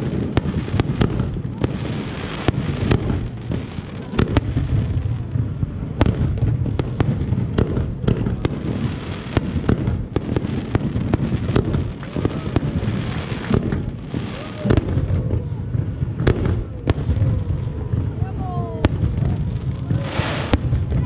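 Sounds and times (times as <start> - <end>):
fireworks bangs and crackles: 0.0 - 21.0
low rumble of booms: 13.5 - 21.0.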